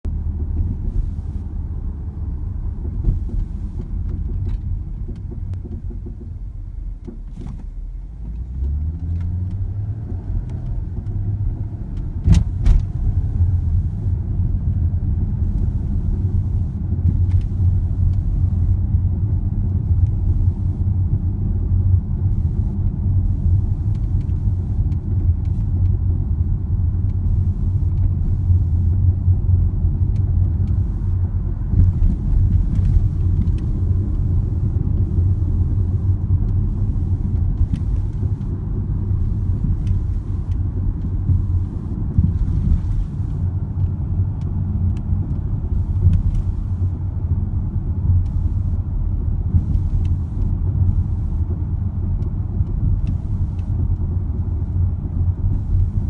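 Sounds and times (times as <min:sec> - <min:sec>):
car engine running: 0:00.0 - 0:56.0
engine knocking ticks: 0:00.1 - 0:13.8, 0:30.0 - 0:46.7.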